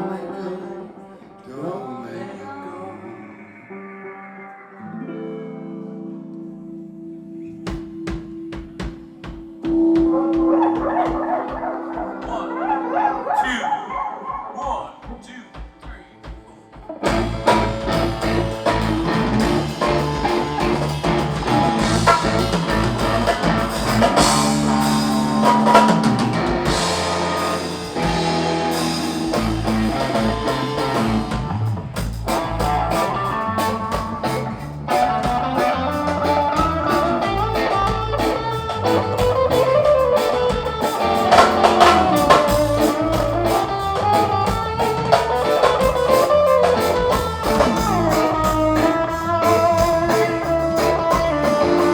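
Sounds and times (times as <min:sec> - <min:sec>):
electric guitars: 0:00.0 - 0:51.9
drum kit: 0:07.5 - 0:13.1, 0:14.4 - 0:51.9
electric bass: 0:17.0 - 0:51.9.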